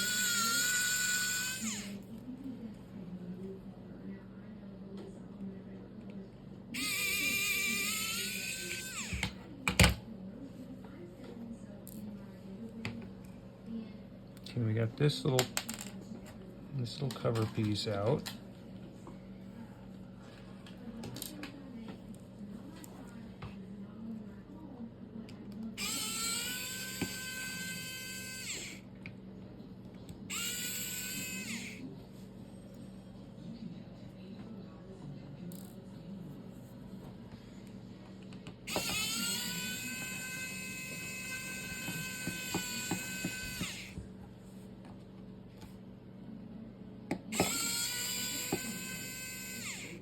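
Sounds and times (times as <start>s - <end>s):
electric screwdriver whining: 0.0s - 2.0s, 6.8s - 9.4s, 25.8s - 28.8s, 30.3s - 31.8s, 38.7s - 44.0s, 47.3s - 50.0s
small electric motor whirring: 0.0s - 2.0s, 6.8s - 9.4s, 25.8s - 28.9s, 30.3s - 31.9s, 38.7s - 44.0s, 47.3s - 50.0s.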